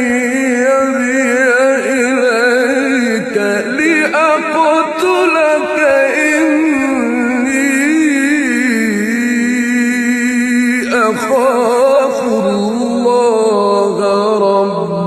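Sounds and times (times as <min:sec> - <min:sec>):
person chanting recitation: 0:00.0 - 0:15.0.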